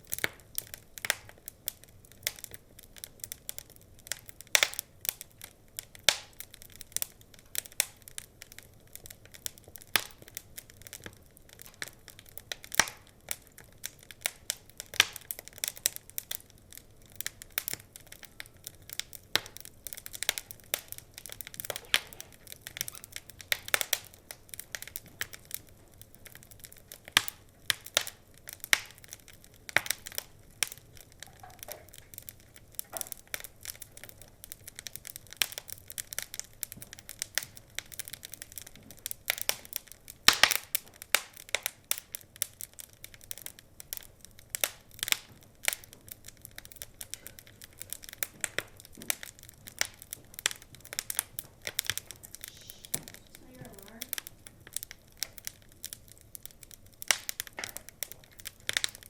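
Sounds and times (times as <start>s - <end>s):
wood fire crackling and popping: 0.0s - 59.0s
faint hiss: 52.2s - 54.2s.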